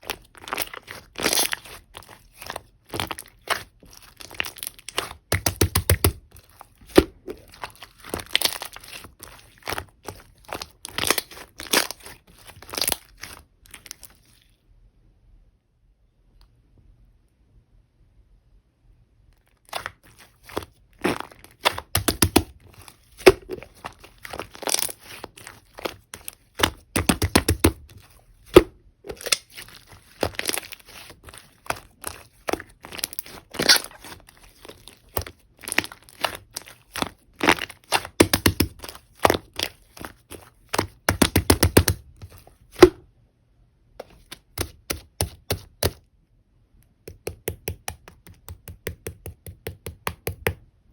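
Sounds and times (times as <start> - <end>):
slime squeezed by hand: 19.6 - 43.0.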